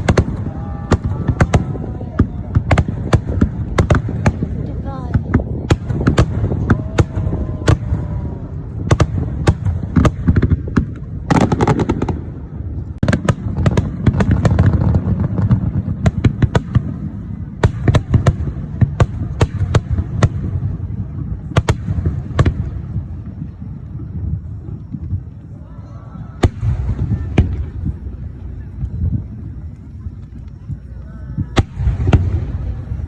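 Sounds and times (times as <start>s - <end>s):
fireworks crackling: 0.0s - 33.0s.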